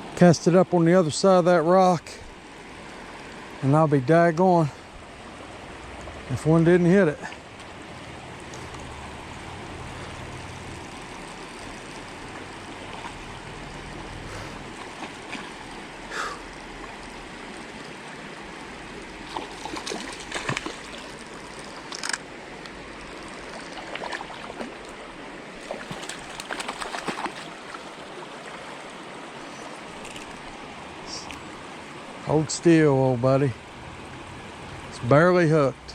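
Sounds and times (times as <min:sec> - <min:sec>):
stream gurgling over rocks: 0:00.0 - 0:35.9
sharp knocks and splashy clatters: 0:14.7 - 0:15.7, 0:19.3 - 0:22.2, 0:23.4 - 0:24.9, 0:25.6 - 0:27.8.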